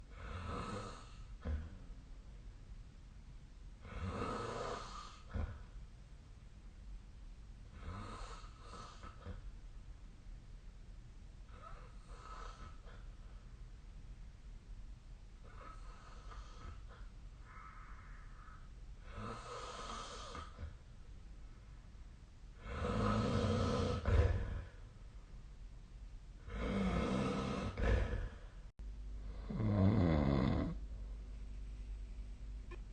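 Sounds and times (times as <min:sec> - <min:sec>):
person snoring: 0:00.1 - 0:01.8, 0:03.8 - 0:05.6, 0:22.6 - 0:24.8, 0:26.5 - 0:28.5, 0:29.3 - 0:30.8
short low snort: 0:22.7 - 0:24.8, 0:26.5 - 0:28.5.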